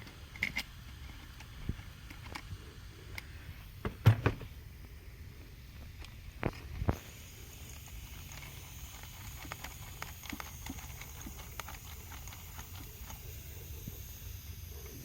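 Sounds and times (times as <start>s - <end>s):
hand tools clicking and tapping: 0.0s - 2.5s, 7.8s - 13.6s.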